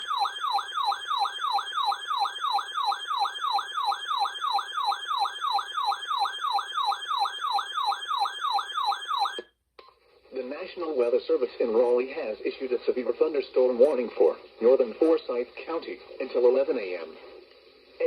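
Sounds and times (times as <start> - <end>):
electronic siren yelping: 0.0 - 9.5.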